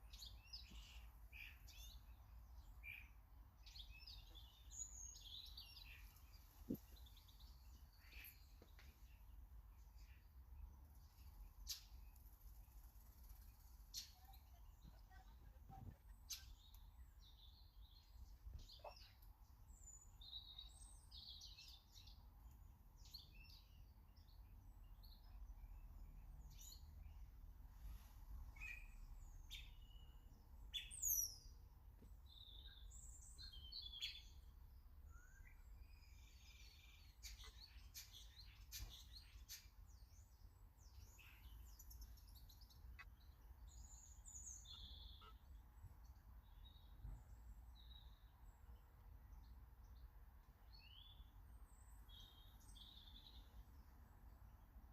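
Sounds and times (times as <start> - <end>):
birds chirping: 0.0 - 27.4, 28.5 - 54.6.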